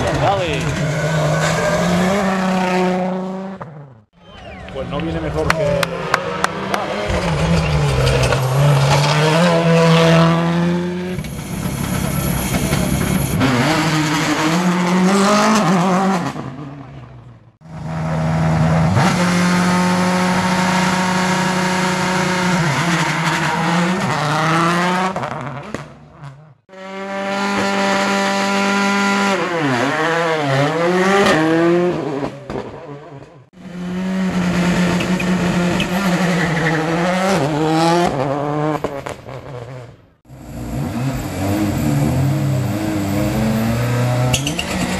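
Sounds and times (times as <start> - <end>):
rally cars passing at full speed: 0.0 - 44.9.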